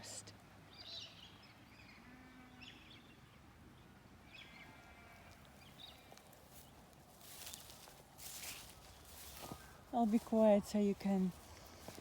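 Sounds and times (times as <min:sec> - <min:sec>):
distant birds chirping: 0:05.4 - 0:12.0.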